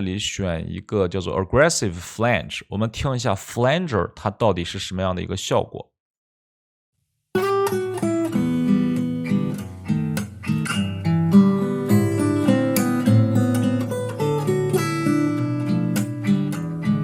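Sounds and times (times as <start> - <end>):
flanged acoustic guitar music: 7.4 - 17.0.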